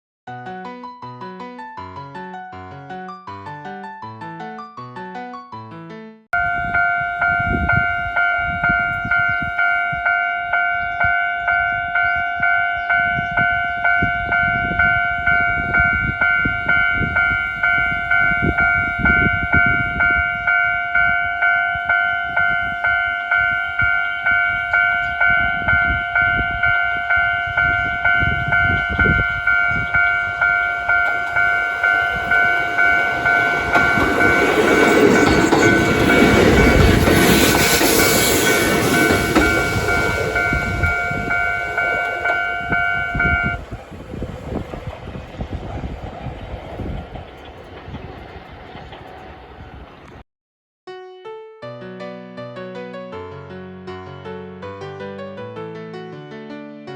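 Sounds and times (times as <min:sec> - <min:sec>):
level crossing bell ringing: 0:06.4 - 0:43.6
approaching train rumble: 0:06.4 - 0:50.2.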